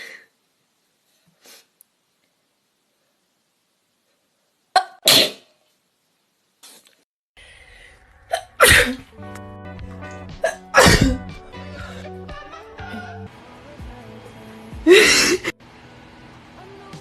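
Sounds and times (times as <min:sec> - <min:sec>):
loud sneezes: 0:04.8 - 0:05.5, 0:08.3 - 0:09.0, 0:10.4 - 0:11.3
background music: 0:07.7 - 0:15.6, 0:16.2 - 0:17.0.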